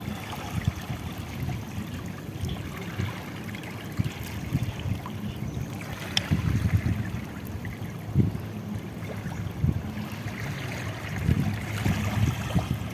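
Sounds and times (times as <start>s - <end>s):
seawater lapping at shore: 0.0s - 12.9s
wind rumble on microphone: 0.0s - 12.9s.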